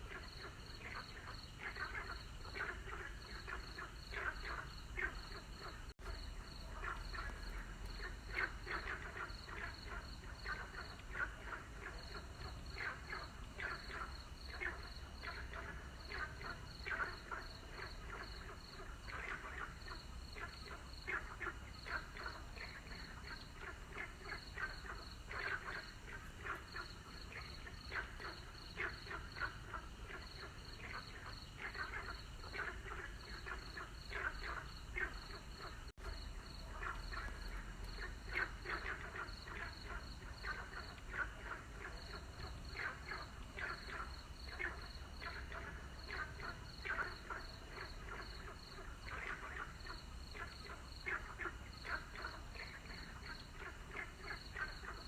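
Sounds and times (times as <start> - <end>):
frogs croaking: 0.0 - 55.0.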